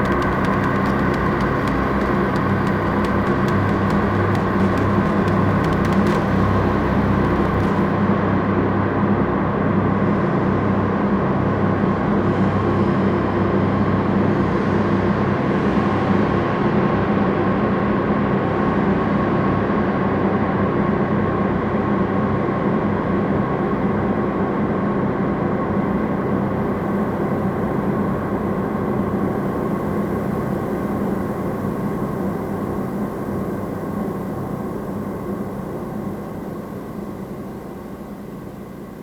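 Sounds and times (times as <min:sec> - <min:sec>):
droning noise music: 0:00.0 - 0:08.3.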